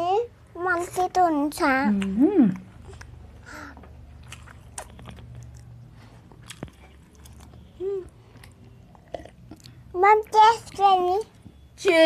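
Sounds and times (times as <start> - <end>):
chewing food: 2.0 - 11.6.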